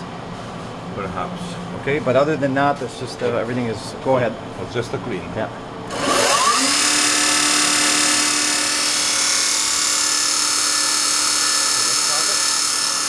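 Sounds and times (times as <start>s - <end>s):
grinder humming with high hiss: 5.9s - 13.0s.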